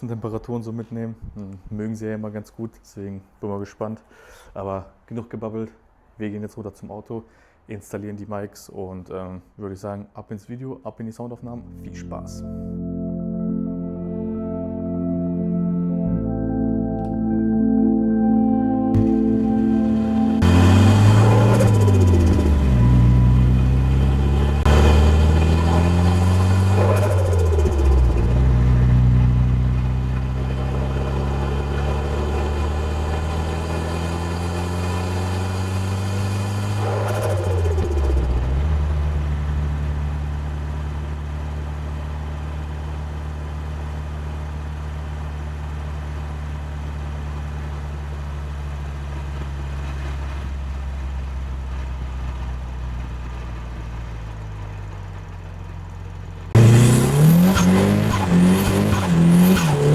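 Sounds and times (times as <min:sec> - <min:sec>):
car engine running at low revs: 0:19.0 - 0:59.9.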